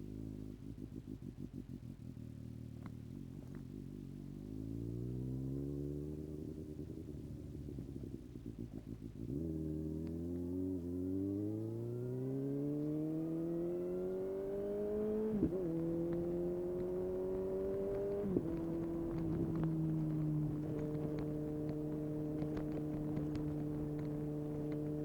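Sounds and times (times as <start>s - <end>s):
motorcycle engine revving: 0.0s - 25.0s
exhaust pop: 15.3s - 25.0s.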